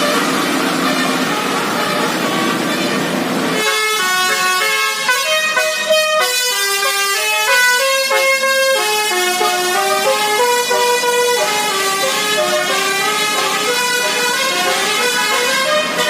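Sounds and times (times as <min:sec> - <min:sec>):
musical bus horn melody: 0:00.0 - 0:16.0.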